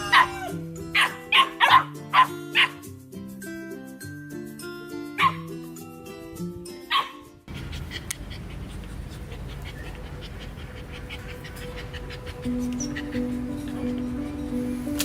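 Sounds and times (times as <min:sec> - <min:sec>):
background music: 0:00.0 - 0:07.5, 0:10.6 - 0:15.0
dog barking: 0:00.1 - 0:02.8, 0:05.2 - 0:05.5, 0:06.9 - 0:07.2.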